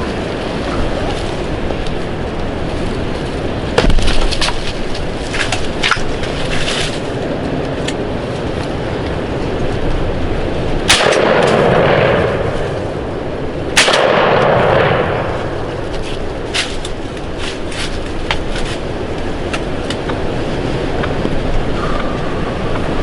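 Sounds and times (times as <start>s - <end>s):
wind noise on microphone: 0.0s - 23.0s
shotgun blasts with echo: 10.9s - 12.8s, 13.8s - 15.6s.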